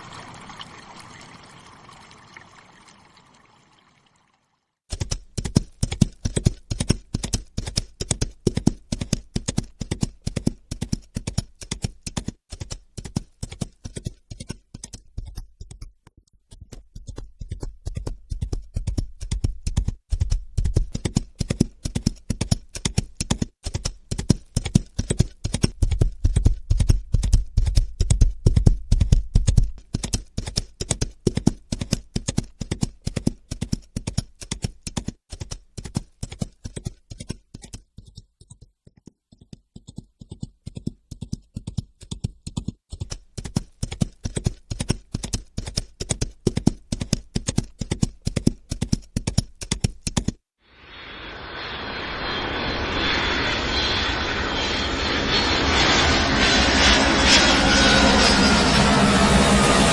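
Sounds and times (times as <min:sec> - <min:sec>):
fast sharp knocks: 0:16.6 - 0:37.7.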